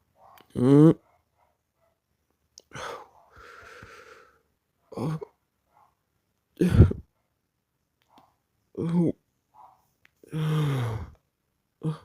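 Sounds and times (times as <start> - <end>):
person hiccuping: 5.0 - 5.3, 6.6 - 7.0.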